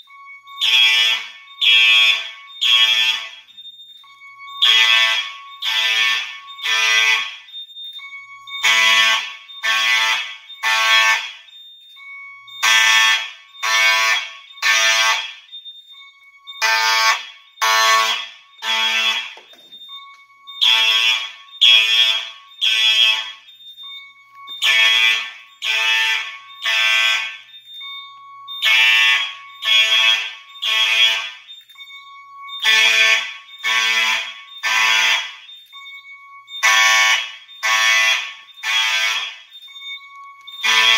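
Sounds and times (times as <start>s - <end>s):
fire alarm horn blasts: 0.0s - 40.9s.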